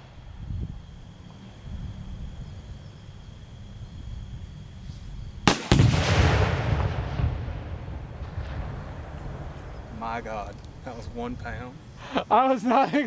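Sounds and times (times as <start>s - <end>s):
rifle shot: 5.4s - 9.2s
explosive detonation boom: 5.5s - 9.9s.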